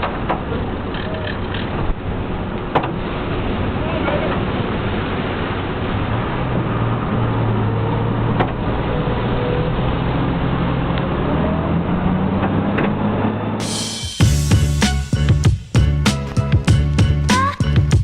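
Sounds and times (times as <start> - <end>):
engine droning: 0.0 - 14.8
loud rushing noise: 12.5 - 15.4.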